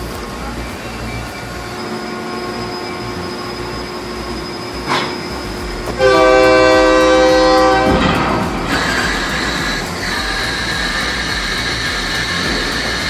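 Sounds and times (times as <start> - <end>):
machinery rumble: 0.0 - 13.0
train horn: 6.0 - 9.0.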